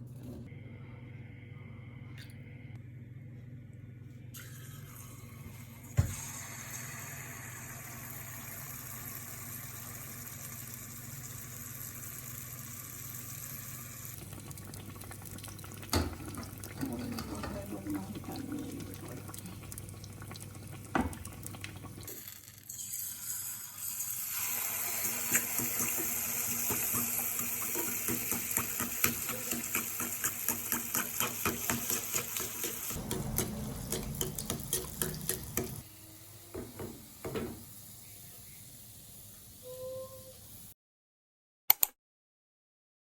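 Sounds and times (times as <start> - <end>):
tap water running into sink: 4.4 - 22.2, 22.8 - 35.8, 36.6 - 37.8.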